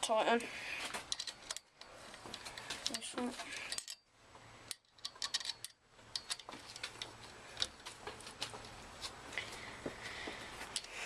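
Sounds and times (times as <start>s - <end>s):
allen key clicking in bolt: 4.7s - 7.0s.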